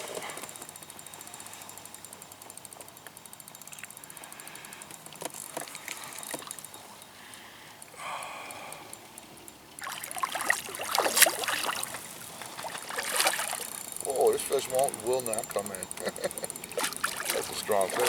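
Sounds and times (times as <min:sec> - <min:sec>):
fishing reel drag clicking: 0:00.0 - 0:18.0
water splashing: 0:09.8 - 0:18.0.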